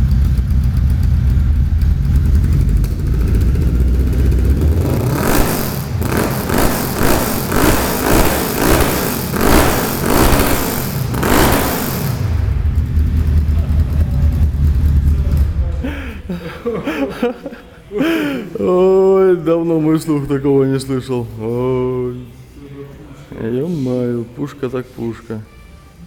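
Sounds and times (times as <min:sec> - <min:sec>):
car engine idling and revving: 0:00.0 - 0:16.3.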